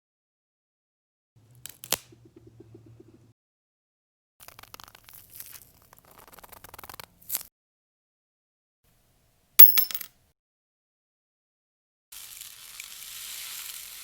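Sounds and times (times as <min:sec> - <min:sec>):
sharp ringing clink: 0:09.6 - 0:10.1.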